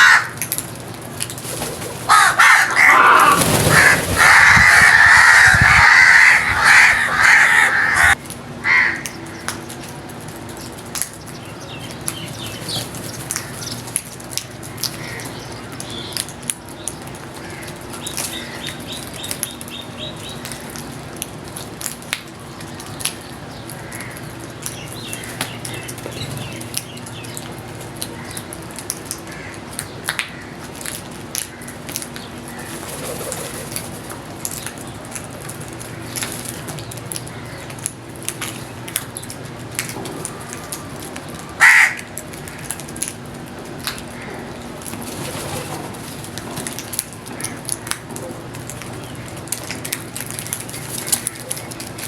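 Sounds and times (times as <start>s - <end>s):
small birds chirping: 9.0s - 21.0s, 22.4s - 28.6s.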